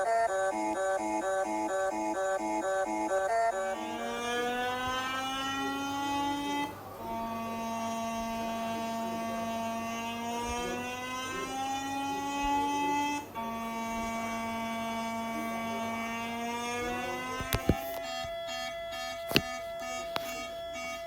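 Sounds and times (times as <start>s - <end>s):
electronic alert alarm tone: 0.0s - 6.7s, 12.3s - 21.0s.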